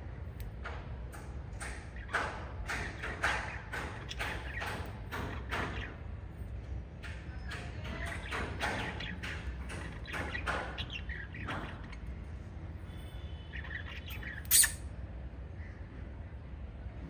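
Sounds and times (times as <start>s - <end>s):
parrots chirping and squawking: 13.5s - 14.8s.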